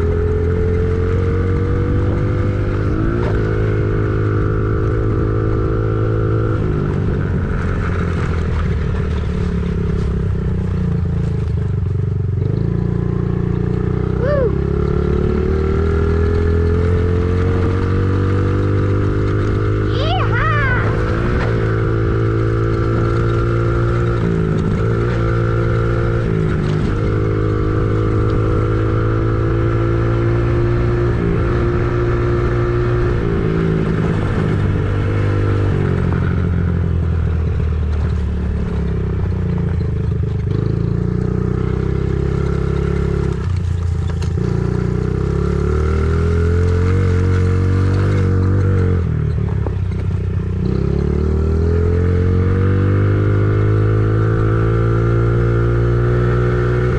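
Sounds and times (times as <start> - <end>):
motor engine running: 13.6 - 15.4.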